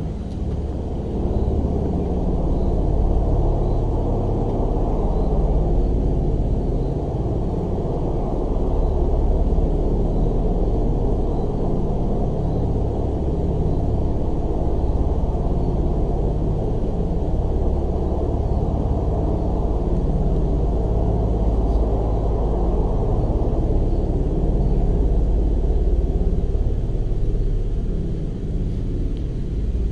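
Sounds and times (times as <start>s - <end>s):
loud low rumble: 0.0s - 29.9s.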